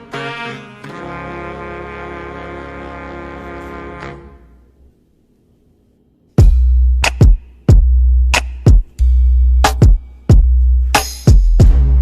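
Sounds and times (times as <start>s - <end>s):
deep bass drum: 6.4s - 8.1s, 11.3s - 12.0s
electronic music beat: 6.4s - 12.0s.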